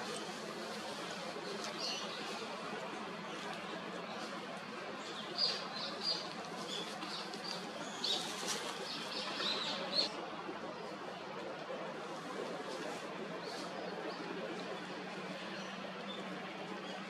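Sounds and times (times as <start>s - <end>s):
steady background hiss: 0.0s - 17.0s
small birds chirping: 3.2s - 10.1s.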